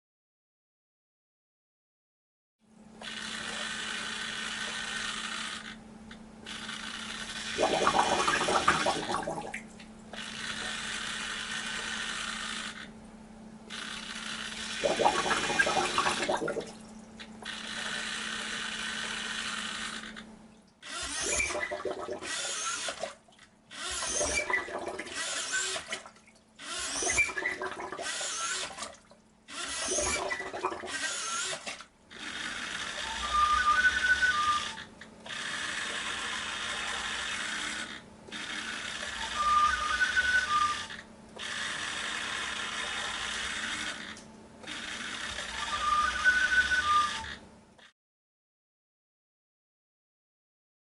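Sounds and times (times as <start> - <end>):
servo whirring: 10.1 - 12.9, 17.4 - 20.2, 20.8 - 21.6, 22.2 - 23.1, 23.7 - 24.5, 25.1 - 25.9, 26.6 - 27.5, 29.5 - 30.2, 30.9 - 47.9.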